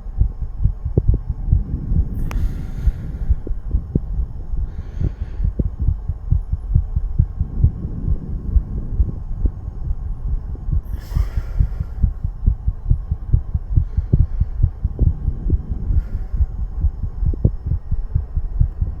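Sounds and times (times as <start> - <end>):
heart beating fast: 0.0 - 19.0.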